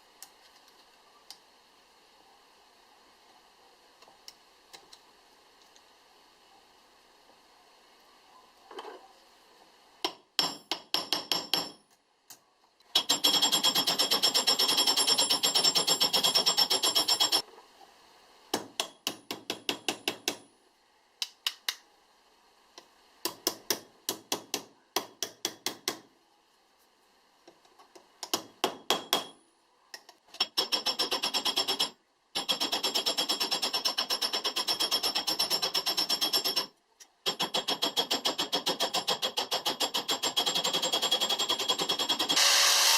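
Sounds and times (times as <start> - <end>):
hammer tapping on metal: 10.0 - 11.9.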